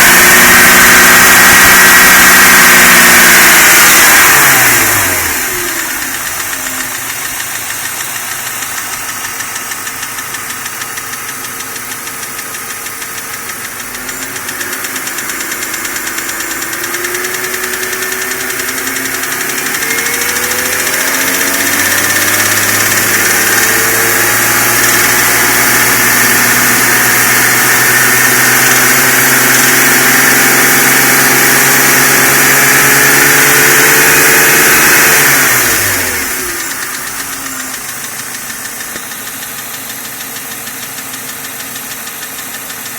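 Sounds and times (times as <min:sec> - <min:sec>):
car engine idling and revving: 0:00.0 - 0:42.9
engine tappet ticking: 0:04.8 - 0:30.0, 0:34.7 - 0:42.9.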